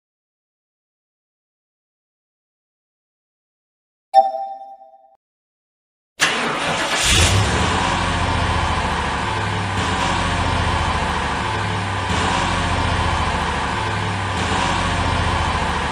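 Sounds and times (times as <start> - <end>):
car engine running: 6.2 - 15.9.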